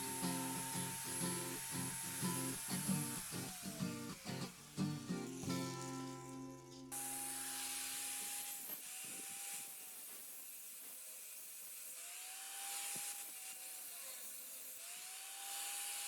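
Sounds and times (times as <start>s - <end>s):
guitar music: 0.0s - 7.0s
flap disc sander whining on steel: 0.0s - 9.2s.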